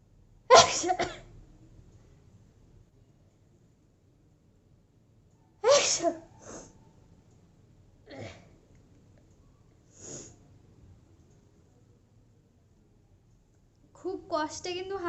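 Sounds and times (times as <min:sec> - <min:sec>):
woman sneezing: 0:05.6 - 0:06.3.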